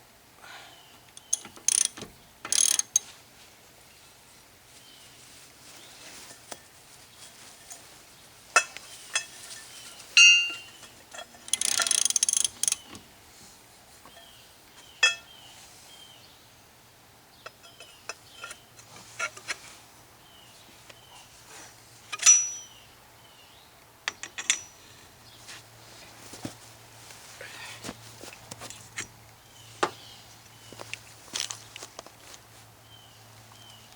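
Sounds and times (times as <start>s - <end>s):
hand tools clinking against metal: 1.1s - 3.1s, 8.5s - 13.0s, 14.1s - 15.4s, 17.5s - 19.5s, 22.1s - 22.8s, 24.1s - 25.0s.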